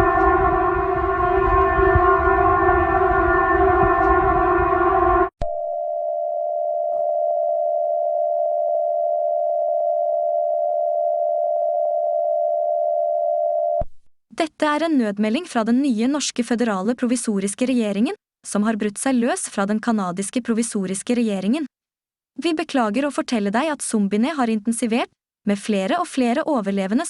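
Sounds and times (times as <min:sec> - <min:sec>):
low rumble: 0:00.0 - 0:05.3
emergency siren steady pitch: 0:00.0 - 0:05.4.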